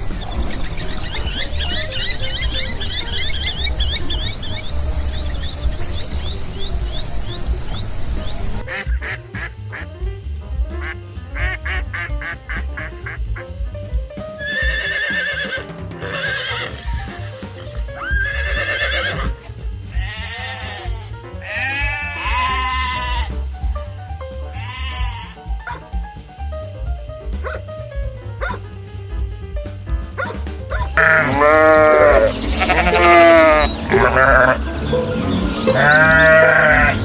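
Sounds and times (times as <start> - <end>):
farm animals calling: 0.0 - 9.2, 14.4 - 16.9, 18.0 - 23.3, 24.5 - 25.9, 30.2 - 37.0
background music with steady beat: 0.0 - 37.0.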